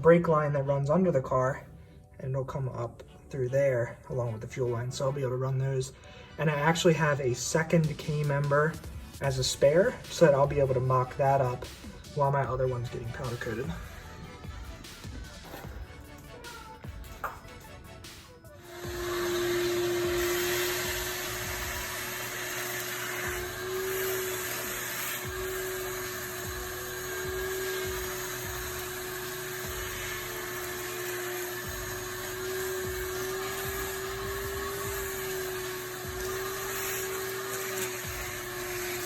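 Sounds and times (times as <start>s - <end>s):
vacuum cleaner running: 18.5s - 39.0s.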